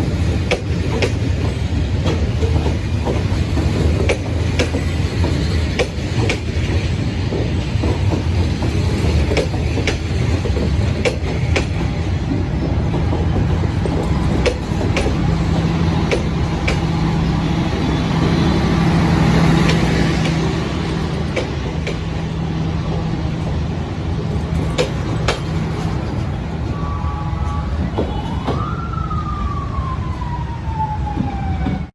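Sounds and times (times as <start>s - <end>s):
wheels clicking over rail joints: 0.0s - 17.4s, 18.2s - 26.8s
diesel train engine hum: 0.0s - 31.8s
siren-like tone: 26.6s - 31.9s.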